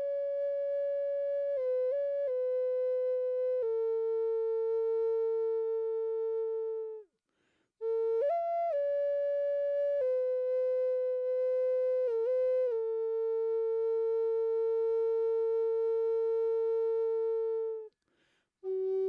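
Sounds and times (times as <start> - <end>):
flute playing slow melody: 0.0 - 7.1, 7.8 - 17.9, 18.6 - 19.0
faint breath: 7.2 - 7.8, 18.0 - 18.6.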